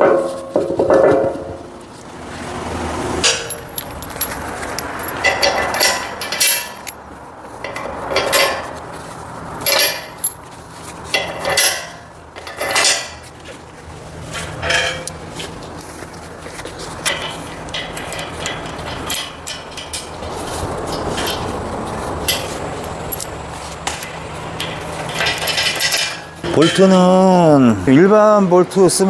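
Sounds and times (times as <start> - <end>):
steel parts clanking together: 3.2 - 7.0, 7.6 - 8.8, 9.6 - 10.4, 11.1 - 13.3, 14.3 - 16.0, 17.0 - 21.5, 22.2 - 27.1.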